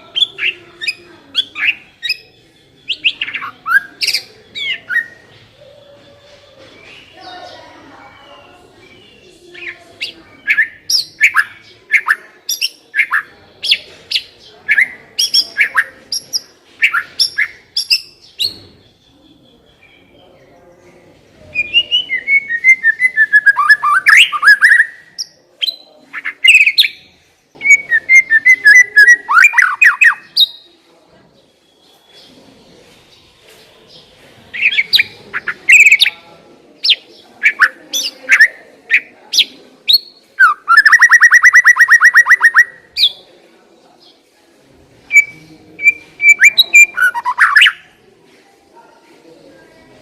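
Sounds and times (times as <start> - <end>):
bird chattering trills: 36.8 - 43.2.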